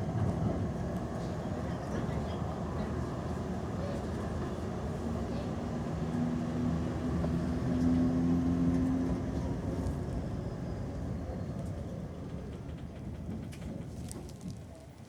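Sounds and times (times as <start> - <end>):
tram rumbling: 0.0 - 15.0.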